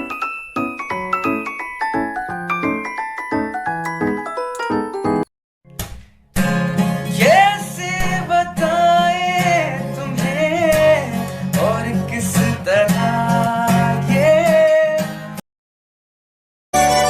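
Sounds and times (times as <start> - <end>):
acoustic guitar strumming: 0.0 - 5.2.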